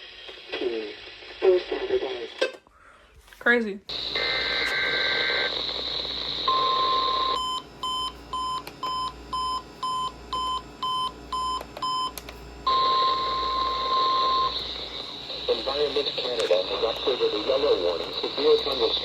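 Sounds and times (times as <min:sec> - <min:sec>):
constant hiss: 0:14.5 - 0:19.0.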